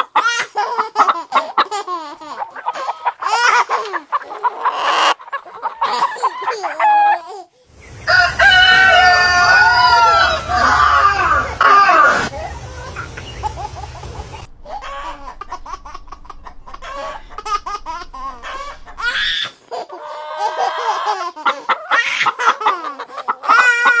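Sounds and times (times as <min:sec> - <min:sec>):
chickens clucking: 0:00.0 - 0:09.1, 0:12.2 - 0:24.0
rooster crowing: 0:08.0 - 0:12.0, 0:14.5 - 0:19.5.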